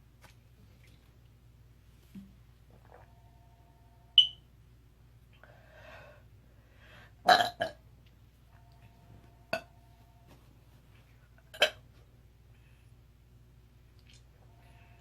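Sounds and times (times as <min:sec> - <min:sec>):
woman burping: 0:07.3 - 0:07.8.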